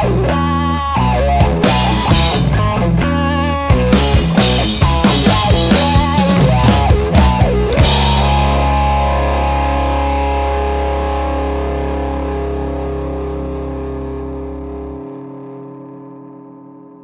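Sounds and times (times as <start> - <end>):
distorted electric guitar chord: 3.6 - 16.9
deep low note: 4.5 - 15.0.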